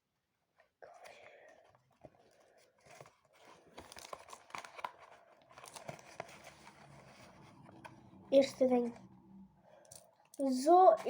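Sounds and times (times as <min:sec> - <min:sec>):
packaging tearing and crinkling: 0:03.6 - 0:06.5.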